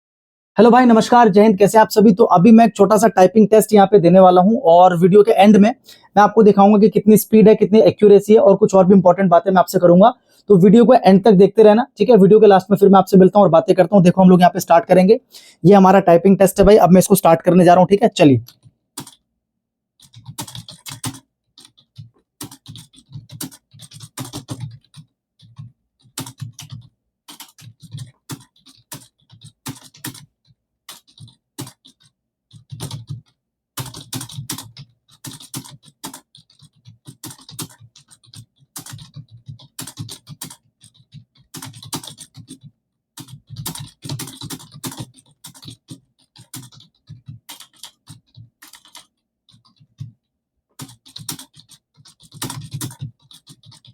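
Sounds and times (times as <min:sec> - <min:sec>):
computer keyboard typing: 0:16.4 - 0:19.3, 0:20.0 - 0:53.9.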